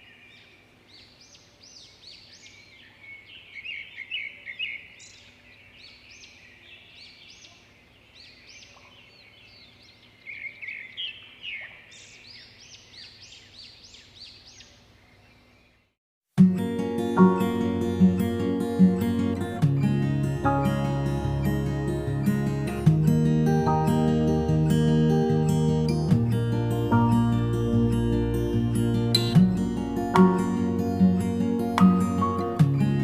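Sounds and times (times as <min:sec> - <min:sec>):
birds chirping and calling: 0:00.0 - 0:15.9.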